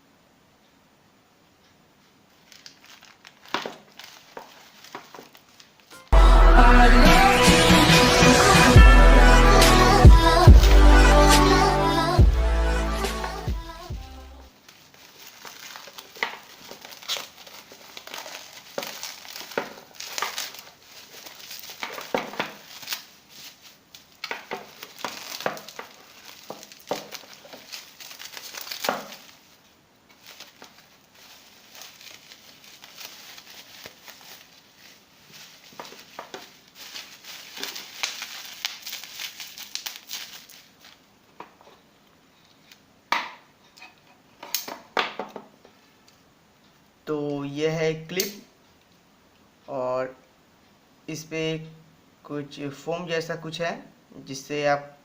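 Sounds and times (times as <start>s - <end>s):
packaging crinkling: 2.3s - 6.1s, 14.5s - 42.9s.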